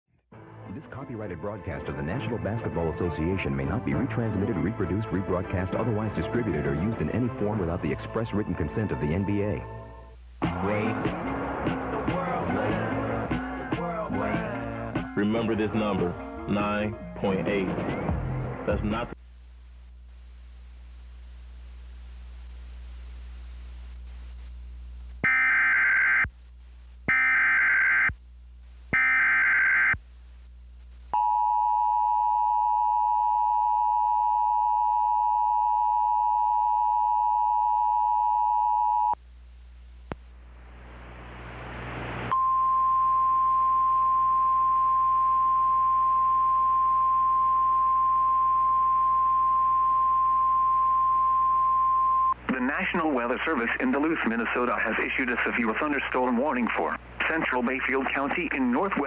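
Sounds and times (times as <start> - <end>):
rising hiss of static: 17.5 - 25.2, 39.3 - 59.0
steady warning alarm tone: 25.2 - 26.2, 27.1 - 28.1, 29.0 - 30.0, 42.4 - 52.4
two-tone attention signal: 42.3 - 52.4.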